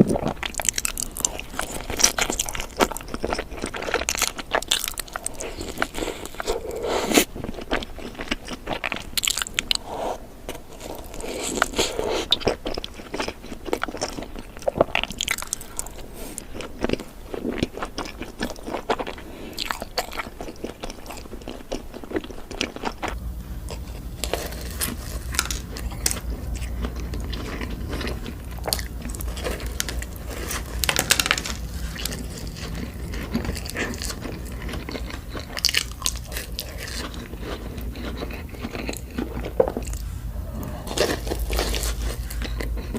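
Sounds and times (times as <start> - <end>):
chewing donuts: 0.0 - 42.9
steady low hum: 23.0 - 42.9.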